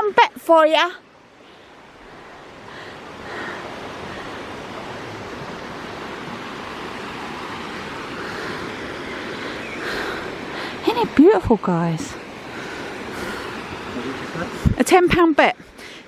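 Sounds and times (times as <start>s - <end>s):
waterfall rushing: 1.2s - 16.0s.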